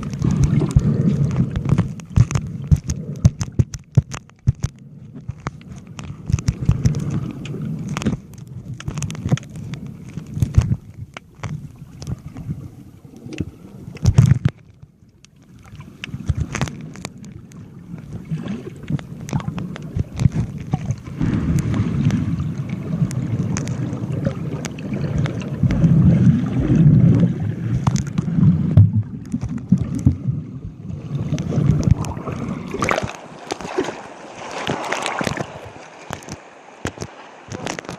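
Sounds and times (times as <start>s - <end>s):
knocks and crackles against pouch: 0.0s - 12.5s, 18.8s - 22.2s, 34.6s - 37.9s
muffled water sloshing and gurgling: 0.0s - 37.9s.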